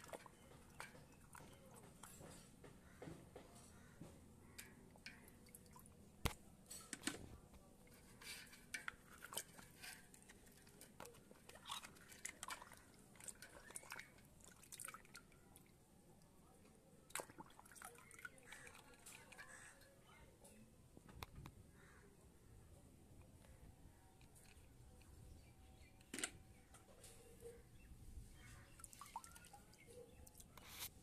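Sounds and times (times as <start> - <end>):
water drips and splashes: 0.0 - 2.6, 4.4 - 6.6, 7.9 - 20.6, 28.4 - 30.6.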